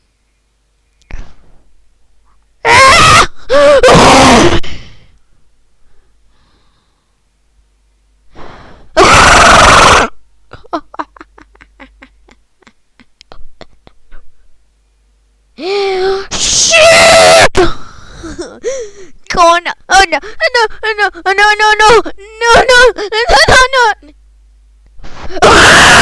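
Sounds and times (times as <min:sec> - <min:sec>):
distorted vocal cries: 0:09.0 - 0:10.2, 0:25.2 - 0:26.0.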